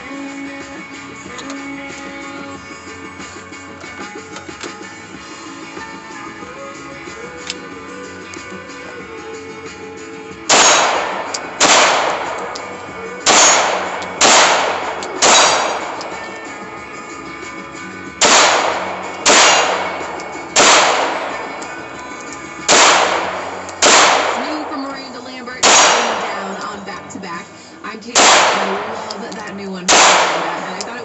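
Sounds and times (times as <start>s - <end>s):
faint background music: 0.0s - 31.0s
gunshots: 10.4s - 16.7s, 18.2s - 22.0s, 22.6s - 27.2s, 28.1s - 31.0s.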